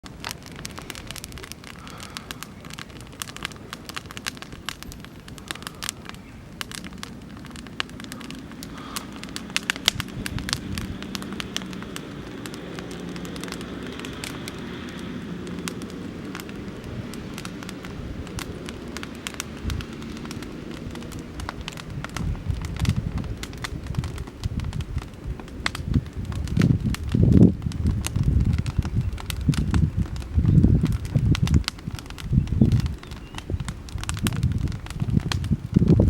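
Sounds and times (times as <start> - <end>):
campfire crackling and popping: 0.0 - 36.0.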